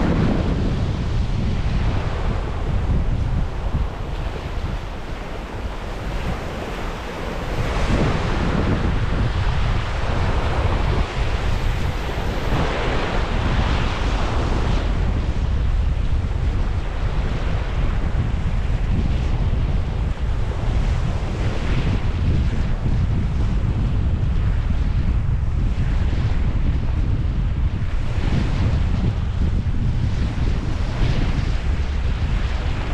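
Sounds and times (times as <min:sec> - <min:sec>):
surf washing onto beach: 0:00.0 - 0:18.9
wind buffeting microphone: 0:00.0 - 0:32.9.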